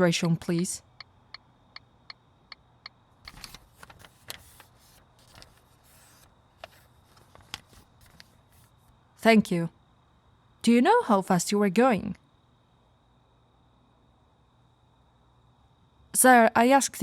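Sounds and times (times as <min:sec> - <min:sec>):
papers rustling: 0:03.3 - 0:08.9.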